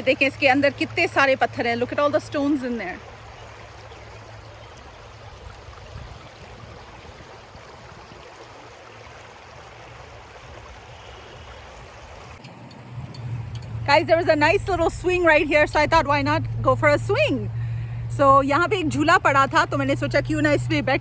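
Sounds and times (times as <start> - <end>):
creek water running over rocks: 0.0 - 16.2
low steady rumble: 0.0 - 21.0.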